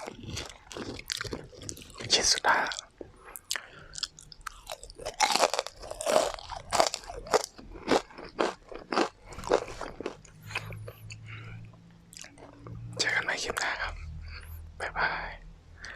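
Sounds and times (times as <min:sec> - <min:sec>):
chewing crispy food: 0:00.0 - 0:11.4, 0:12.0 - 0:12.9.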